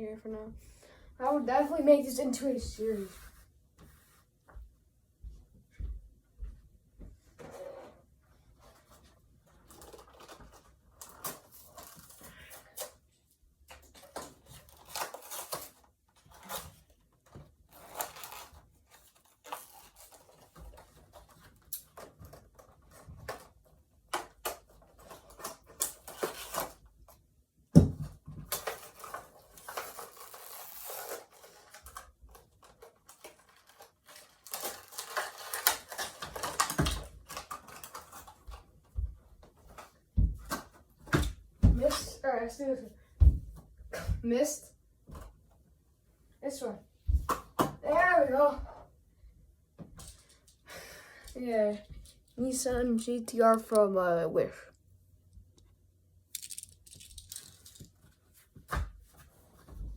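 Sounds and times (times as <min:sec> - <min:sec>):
packaging crinkling and tearing: 0:13.9 - 0:17.0, 0:17.7 - 0:23.5, 0:24.1 - 0:26.8, 0:28.5 - 0:38.6
plastic toys clicking and tapping: 0:31.6 - 0:38.7, 0:56.3 - 0:58.0.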